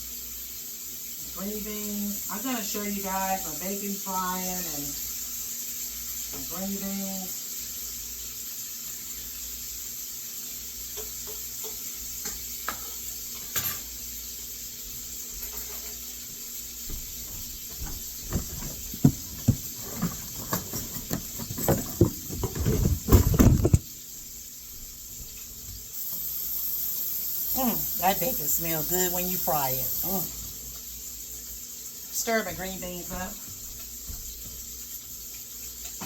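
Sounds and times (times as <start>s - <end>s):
bacon sizzling in a pan: 0.0s - 36.0s
fat popping and crackling: 17.7s - 24.0s.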